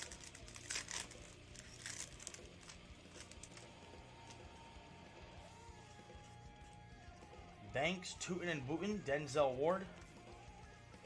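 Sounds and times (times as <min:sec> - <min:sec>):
wrappers crinkling: 0:00.0 - 0:04.4
cards being handled: 0:00.0 - 0:04.5.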